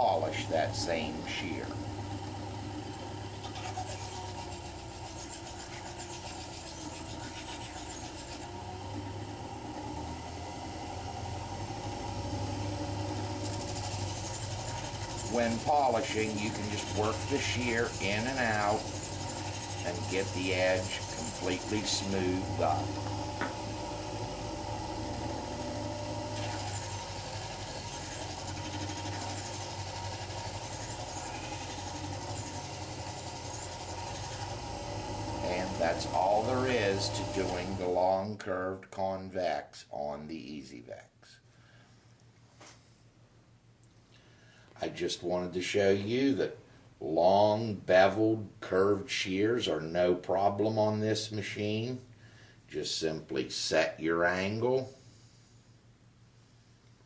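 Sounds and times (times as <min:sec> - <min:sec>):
blade rubbing against wheel: 0:00.0 - 0:09.2, 0:12.7 - 0:37.9
sharpening machine motor running: 0:00.0 - 0:38.0.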